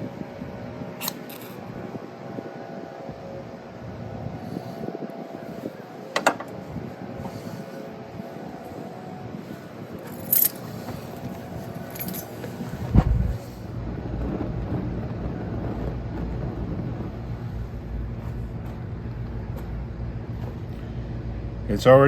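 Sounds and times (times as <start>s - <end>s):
wind rumble on microphone: 0.0s - 22.0s
heavy thump: 12.8s - 13.4s.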